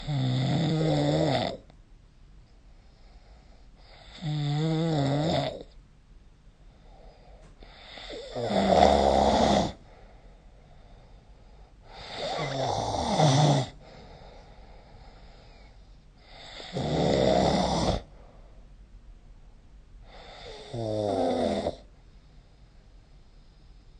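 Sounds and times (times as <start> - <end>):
person snoring: 0.0 - 1.7, 3.8 - 5.8, 6.9 - 10.0, 11.9 - 18.2, 20.0 - 21.9.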